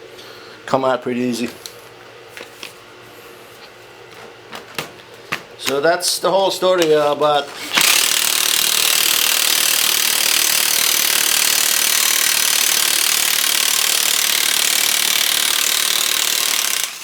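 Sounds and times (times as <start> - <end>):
impact wrench hammering: 7.6 - 17.0.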